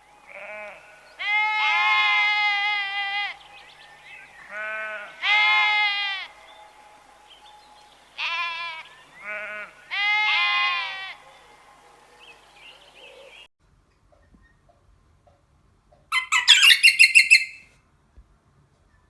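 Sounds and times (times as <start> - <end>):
livestock bleating: 0.3 - 3.4, 4.5 - 6.3, 8.2 - 11.2.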